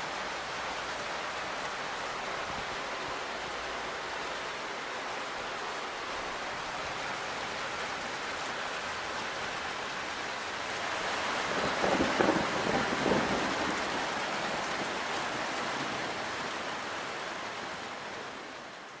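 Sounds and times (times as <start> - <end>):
rain hiss: 0.0 - 19.0
thunder rumble: 11.5 - 14.1.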